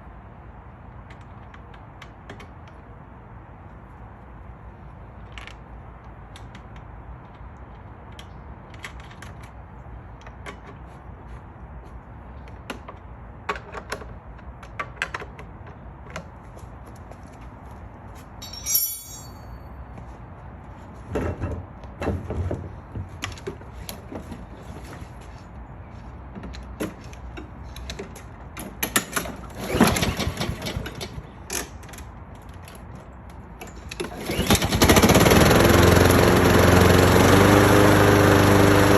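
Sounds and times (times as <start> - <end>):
tools and parts clicking and rattling: 18.3 - 19.8
sharp metallic clink: 18.4 - 19.9.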